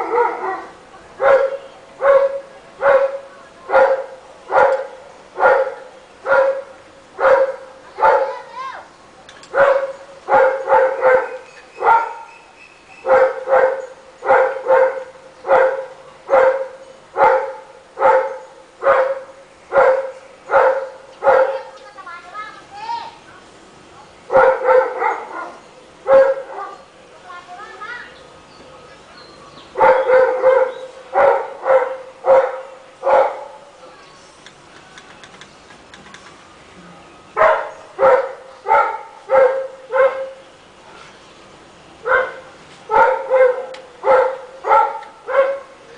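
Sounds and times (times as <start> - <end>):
dog barking: 0.0 - 8.4, 9.5 - 12.3, 13.0 - 21.7, 24.3 - 26.8, 29.8 - 33.6, 37.4 - 40.4, 42.1 - 45.7.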